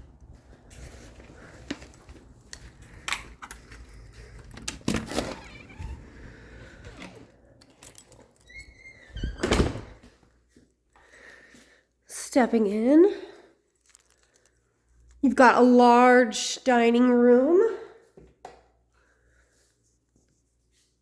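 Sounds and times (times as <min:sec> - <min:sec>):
door squeak: 0:04.9 - 0:06.2, 0:08.4 - 0:10.0.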